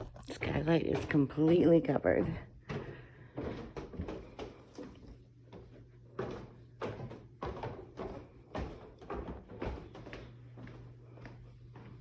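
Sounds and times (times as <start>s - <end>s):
soft knocks and thumps: 0.0s - 10.4s
steady low hum: 0.0s - 12.0s.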